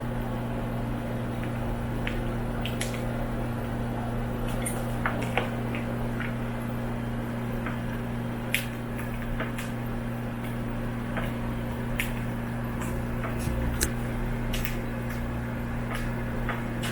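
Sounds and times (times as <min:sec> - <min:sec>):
steady low hum: 0:00.0 - 0:16.9.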